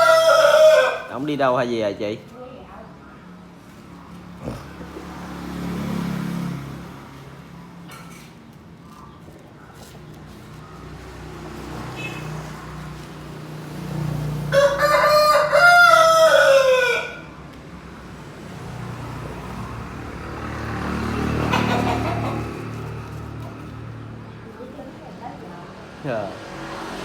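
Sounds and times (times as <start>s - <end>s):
rooster crowing: 0.0s - 1.5s, 14.1s - 17.5s.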